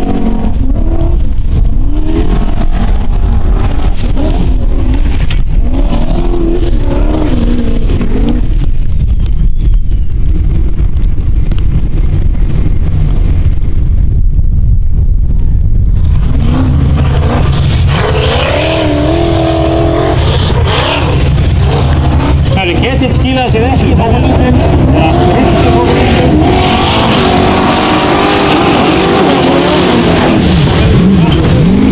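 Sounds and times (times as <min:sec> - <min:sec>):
car engine revving: 0:00.0 - 0:08.9, 0:15.9 - 0:31.9.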